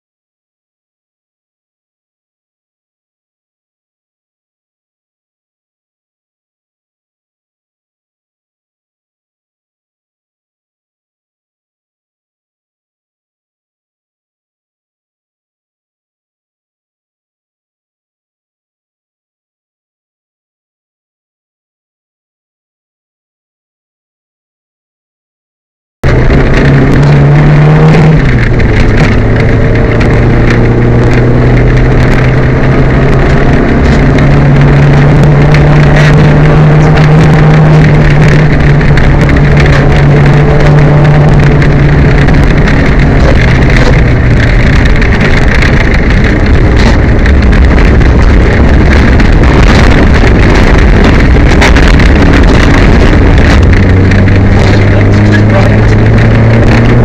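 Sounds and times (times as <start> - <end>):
misfiring car engine: 26.0 - 57.0
road noise: 26.0 - 57.0
wind noise: 26.0 - 57.0.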